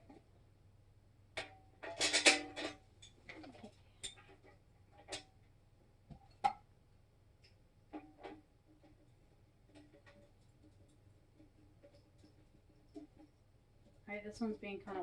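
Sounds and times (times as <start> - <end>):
metal grill parts clinking: 1.4 - 3.4.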